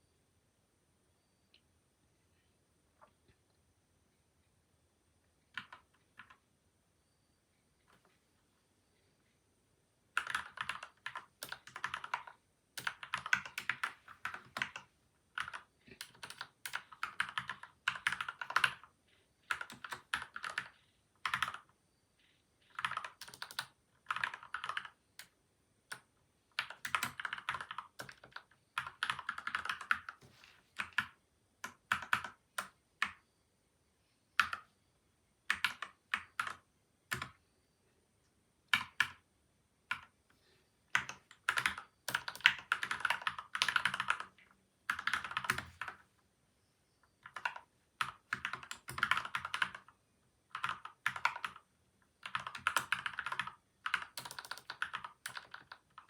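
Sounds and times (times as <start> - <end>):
mechanical keyboard typing: 5.6 - 6.4, 10.1 - 21.7, 22.6 - 30.2, 30.8 - 33.2, 34.4 - 34.7, 35.5 - 37.4, 38.7 - 39.2, 40.9 - 46.1, 47.2 - 56.0.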